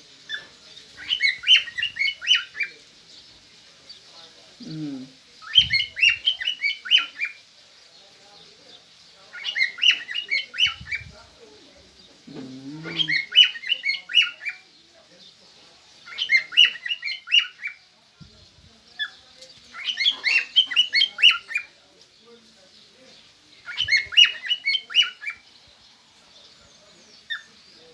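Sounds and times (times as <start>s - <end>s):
birds squawky chirps: 0.2s - 11.2s, 11.8s - 17.9s, 18.8s - 27.9s.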